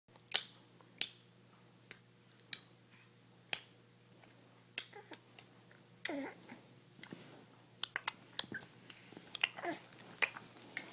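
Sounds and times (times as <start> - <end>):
baby voice: 6.0 - 6.4, 9.5 - 9.9.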